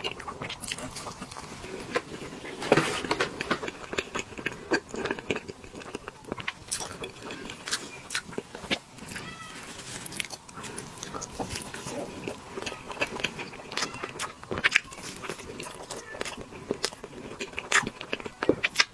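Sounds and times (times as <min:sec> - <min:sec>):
wet chewing and lip smacks: 0:03.6 - 0:09.2, 0:10.0 - 0:18.9.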